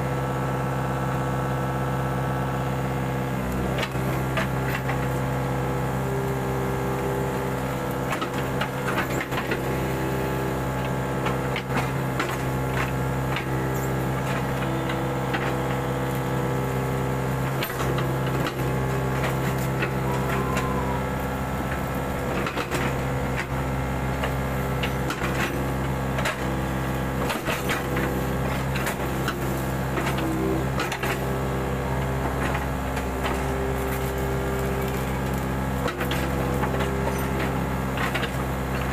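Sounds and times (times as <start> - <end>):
diesel engine running under load: 0.0 - 38.9
higher mechanical hum: 0.0 - 38.9
knocks and clatter of machine: 7.0 - 20.8, 21.7 - 31.5, 32.1 - 38.9.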